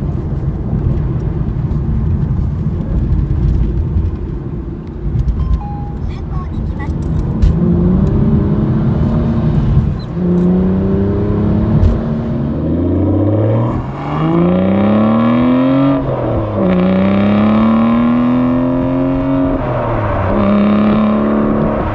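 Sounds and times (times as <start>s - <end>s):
car engine accelerating hard: 5.5s - 21.9s.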